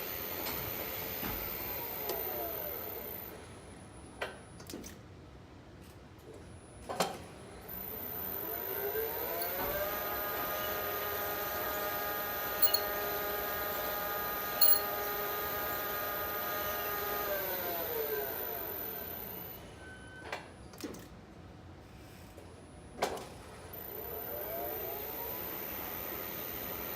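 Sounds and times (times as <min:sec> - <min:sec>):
sharp clicks: 0:12.6 - 0:12.8, 0:14.6 - 0:14.8.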